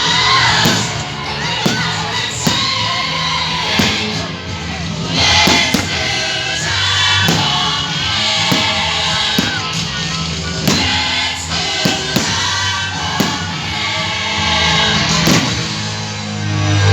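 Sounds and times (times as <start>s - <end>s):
music with singing voices: 0.0s - 16.9s
sharp thumps: 0.6s - 3.0s, 3.7s - 4.3s, 5.4s - 6.2s, 7.2s - 7.8s, 8.5s - 9.9s, 10.6s - 11.2s, 11.8s - 12.6s, 13.2s - 13.7s, 15.3s - 15.8s.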